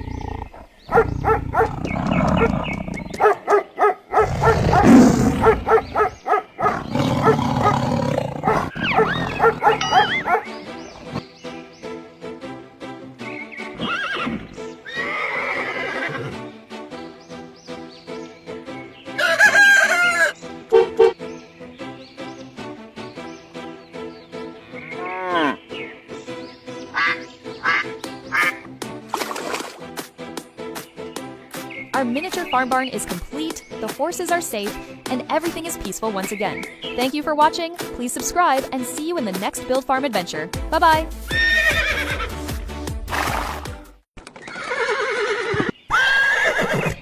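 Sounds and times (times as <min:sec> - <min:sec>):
animal calls: 0:00.0 - 0:11.3, 0:19.2 - 0:21.2, 0:24.6 - 0:25.9, 0:26.8 - 0:28.7
background music: 0:00.0 - 0:44.1
duck quacking: 0:27.0 - 0:28.6
music with steady beat: 0:40.2 - 0:41.5.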